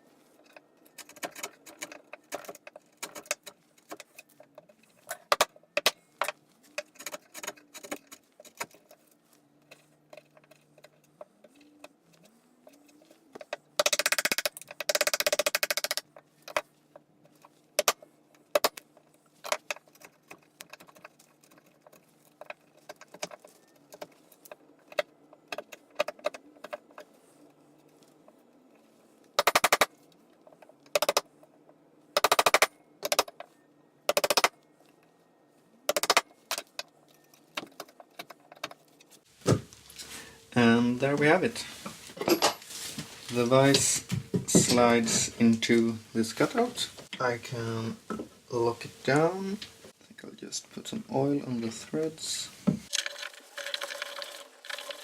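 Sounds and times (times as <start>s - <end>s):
metal tools clinking and knocking: 42.2s - 42.8s.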